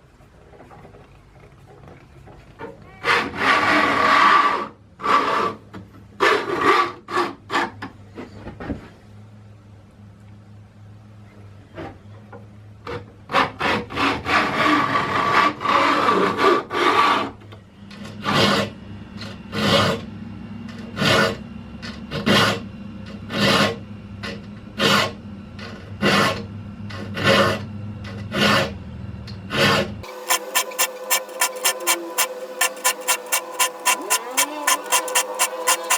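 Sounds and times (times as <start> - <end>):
metal file rasping on saw teeth: 30.0 - 35.9.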